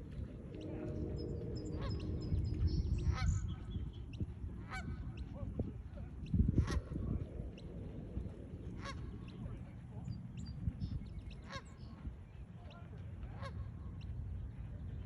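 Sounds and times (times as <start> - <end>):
steady low rumble: 0.0 - 15.0
birds honking: 0.4 - 5.2.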